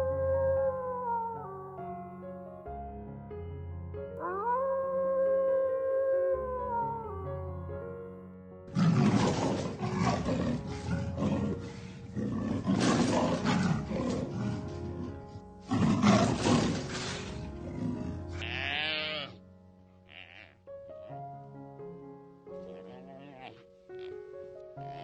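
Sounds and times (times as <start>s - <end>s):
background music: 0.0s - 25.0s
large animal roaring: 8.7s - 18.5s
short pitched animal call: 20.0s - 20.6s.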